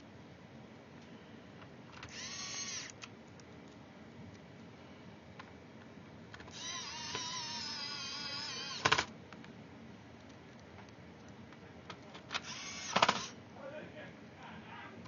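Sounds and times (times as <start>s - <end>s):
electric screwdriver whining: 2.0s - 3.0s, 6.5s - 9.1s, 12.4s - 13.4s.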